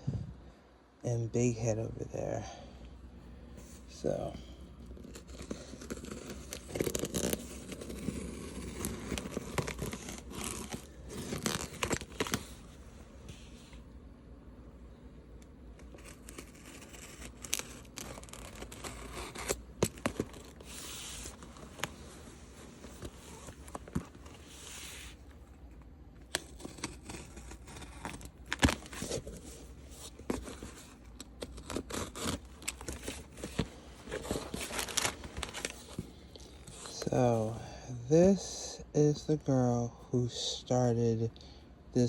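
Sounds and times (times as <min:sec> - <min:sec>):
packing material crinkling: 0:04.7 - 0:13.7, 0:15.7 - 0:37.0
tape and cardboard tearing: 0:04.9 - 0:12.7, 0:15.8 - 0:22.1, 0:26.2 - 0:36.0.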